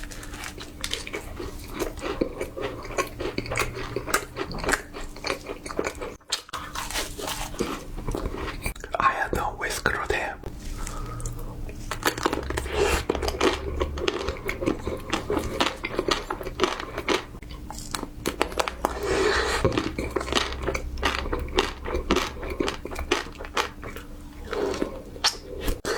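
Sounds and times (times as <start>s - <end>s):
chewing crisp food: 0.0s - 25.9s.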